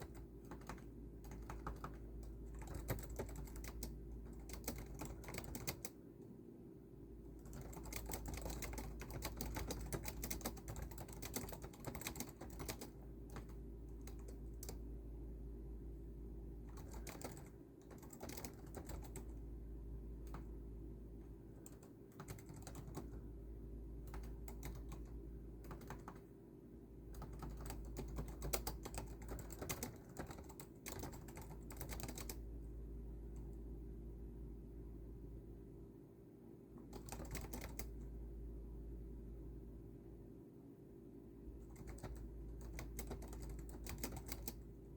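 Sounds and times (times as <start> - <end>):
keyboard typing: 0.0 - 6.0, 7.4 - 14.9, 16.6 - 19.4, 20.2 - 20.6, 21.5 - 23.3, 24.0 - 26.3, 27.1 - 32.5, 36.8 - 38.1, 41.6 - 44.7
steady low hum: 0.0 - 44.9.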